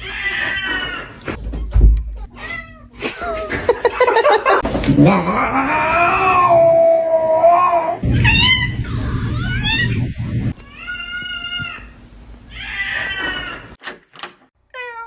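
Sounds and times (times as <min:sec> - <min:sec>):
low rumbling noise: 0:08.0 - 0:10.6.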